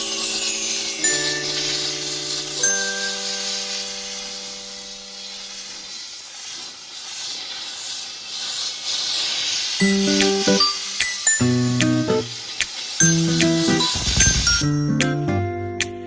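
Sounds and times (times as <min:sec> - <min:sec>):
background music chord: 0:00.0 - 0:05.5
steam cleaner hissing: 0:00.0 - 0:14.8.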